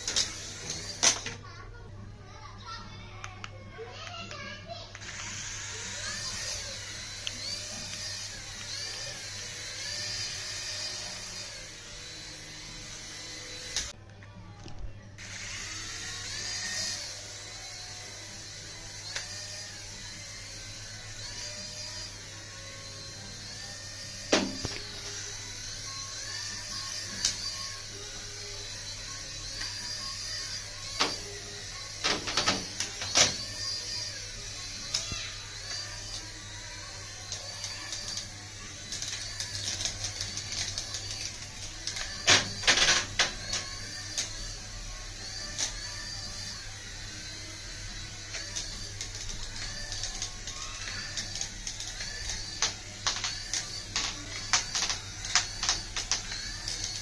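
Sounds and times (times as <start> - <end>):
small electric motor whirring: 0.0 - 1.4, 3.8 - 14.0, 15.2 - 57.0
plastic clicks and clatters: 48.3 - 57.0.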